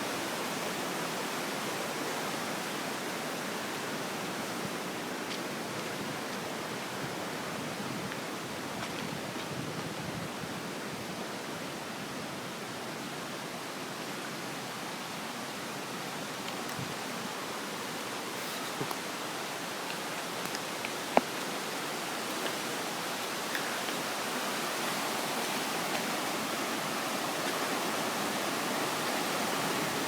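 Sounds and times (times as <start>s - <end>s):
flooding river rushing: 13.6s - 30.0s.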